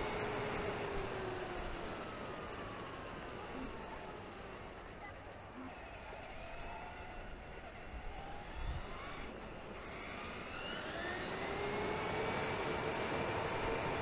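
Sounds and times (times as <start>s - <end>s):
electric motor whining: 8.0s - 14.0s.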